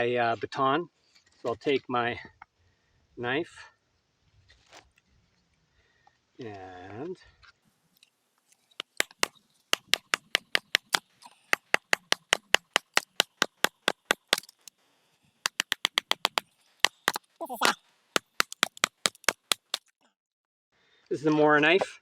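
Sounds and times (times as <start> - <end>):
baton striking knife through wood: 8.8 - 14.7, 15.5 - 19.8.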